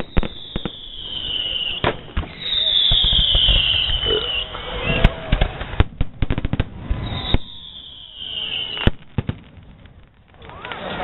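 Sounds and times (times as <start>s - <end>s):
firework whistle falling in pitch: 0.0s - 5.6s, 6.8s - 9.0s
crackling firework bangs: 0.0s - 11.0s
firework bang: 0.0s - 11.0s.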